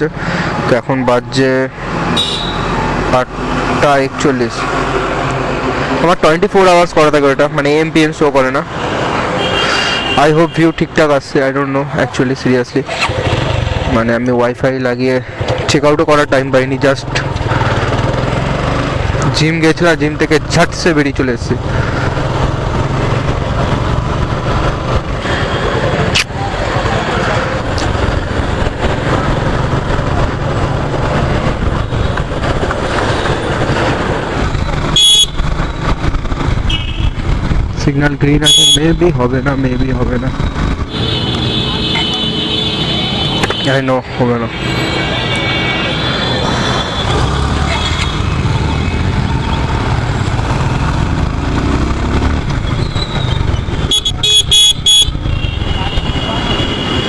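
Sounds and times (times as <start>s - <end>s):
road and wind noise: 0.0s - 57.0s
motorcycle engine drone: 13.0s - 14.2s, 15.4s - 43.4s, 44.2s - 57.0s.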